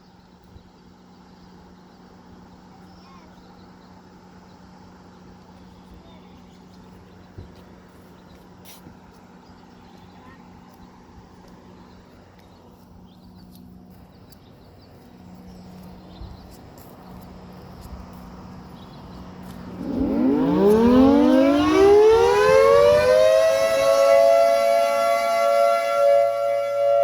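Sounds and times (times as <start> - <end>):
outdoor warning siren: 19.1 - 27.0.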